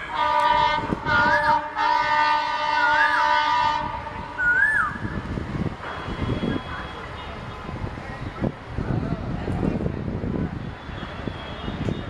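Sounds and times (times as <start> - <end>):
diesel locomotive horn blasts: 0.0 - 4.7
bird whistled call: 4.4 - 5.0.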